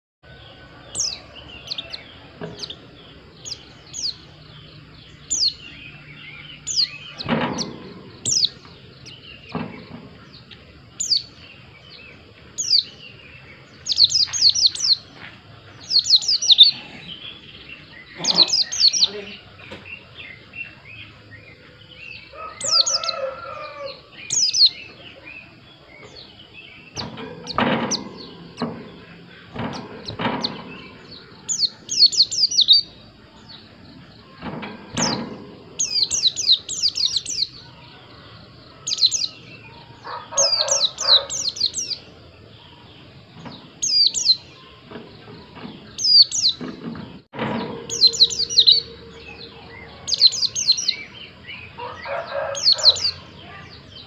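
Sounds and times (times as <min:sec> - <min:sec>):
bird chirping: 0:00.2 - 0:54.0
lower bird calls: 0:00.2 - 0:54.0
dull knocks: 0:27.0 - 0:31.2.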